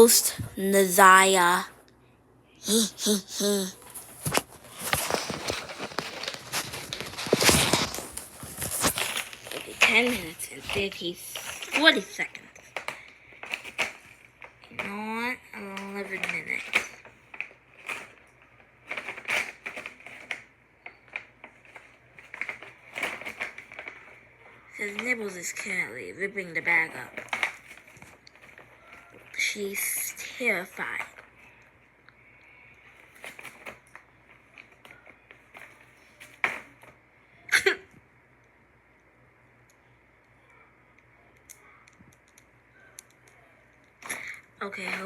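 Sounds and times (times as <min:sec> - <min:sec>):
bag rustling and crinkling: 0:03.8 - 0:14.6.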